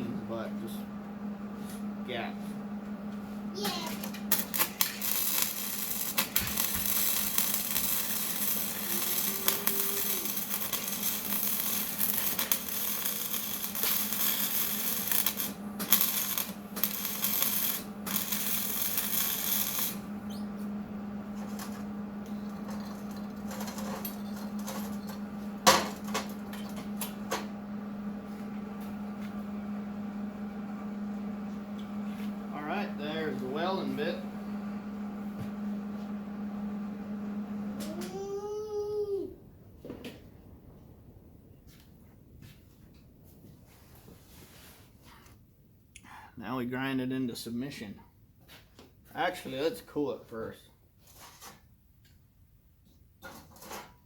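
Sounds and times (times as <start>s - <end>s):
low hum: 0.0s - 45.8s
welding arc crackling and hissing: 3.6s - 27.2s.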